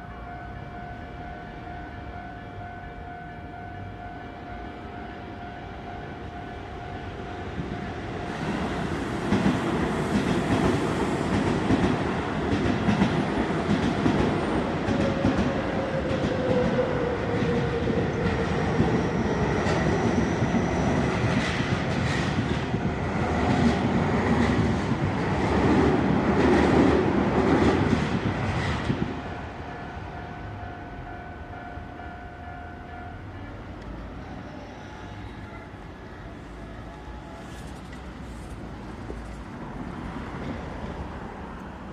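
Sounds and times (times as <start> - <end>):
train wheels clattering over rails: 9.2 - 29.2
rail clicks: 9.3 - 20.0.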